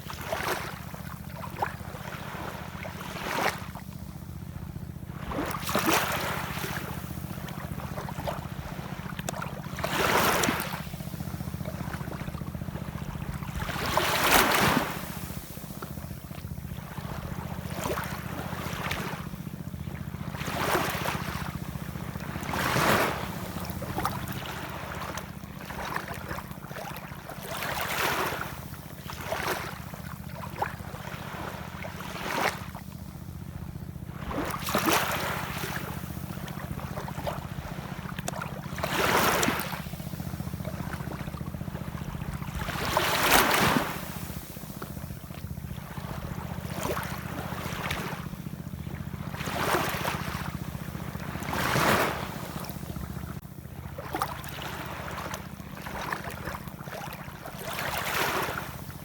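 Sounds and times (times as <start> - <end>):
ocean waves breaking: 0.0 - 59.0.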